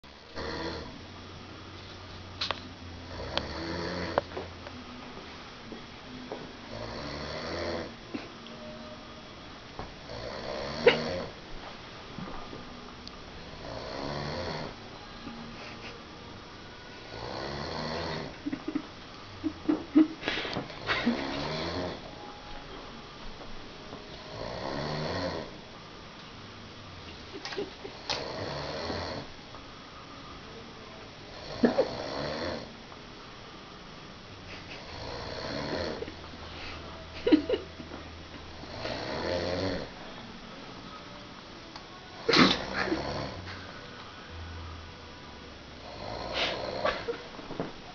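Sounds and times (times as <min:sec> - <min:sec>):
person snoring: 0:00.3 - 0:00.9, 0:03.0 - 0:04.3, 0:06.7 - 0:07.9, 0:10.0 - 0:11.4, 0:13.5 - 0:14.8, 0:17.1 - 0:18.4, 0:20.9 - 0:22.1, 0:24.2 - 0:25.6, 0:27.9 - 0:29.3, 0:31.3 - 0:32.7, 0:34.8 - 0:36.1, 0:38.6 - 0:40.0, 0:42.2 - 0:43.5, 0:45.8 - 0:47.1.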